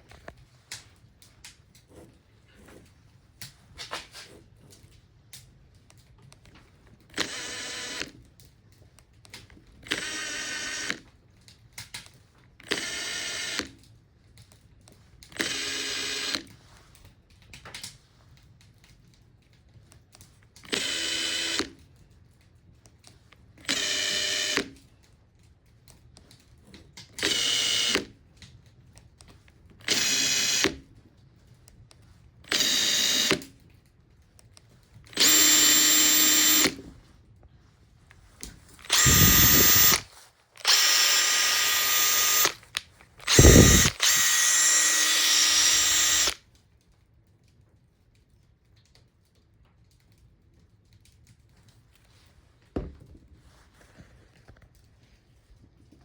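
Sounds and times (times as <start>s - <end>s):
impact driver motor whining: 7.1s - 8.2s, 9.8s - 11.0s, 12.6s - 13.8s, 15.3s - 16.5s, 20.6s - 21.8s, 23.6s - 24.8s, 27.2s - 28.1s, 29.8s - 30.8s, 32.5s - 33.5s, 35.1s - 36.9s, 38.8s - 46.4s.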